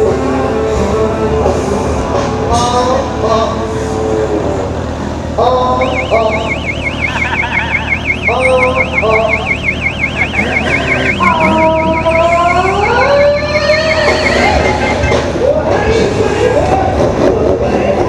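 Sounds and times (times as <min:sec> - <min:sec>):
electronic siren warbling: 0:05.8 - 0:15.2
motorcycle engines revving: 0:05.8 - 0:15.4.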